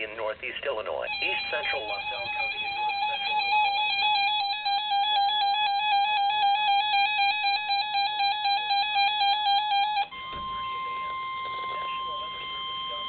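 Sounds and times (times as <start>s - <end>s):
rapid warbling electronic alarm beep: 1.1s - 13.0s.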